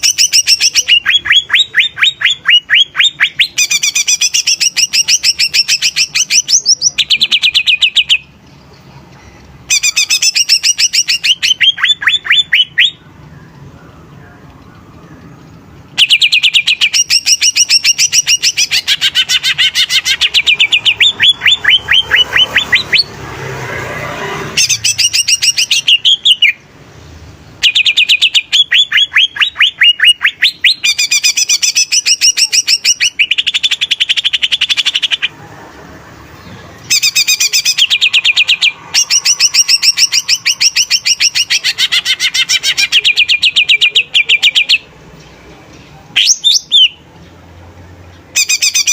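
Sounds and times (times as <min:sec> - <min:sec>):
bird singing fast trills: 0:00.0 - 0:08.3, 0:09.6 - 0:13.8, 0:15.9 - 0:26.7, 0:27.6 - 0:35.3, 0:36.4 - 0:45.0, 0:46.2 - 0:47.1, 0:48.3 - 0:48.9
harsh rasping bird sound: 0:15.9 - 0:26.8, 0:27.5 - 0:45.2.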